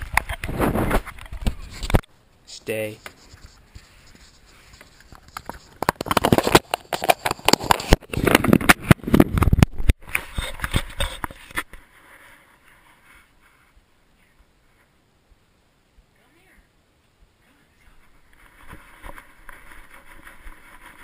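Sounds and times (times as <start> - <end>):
camera case knocking and rubbing: 3.0 - 11.7.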